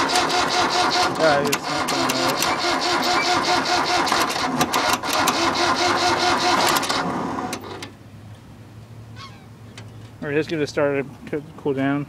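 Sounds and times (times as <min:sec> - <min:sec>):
tractor starter cranking engine: 0:00.0 - 0:08.0.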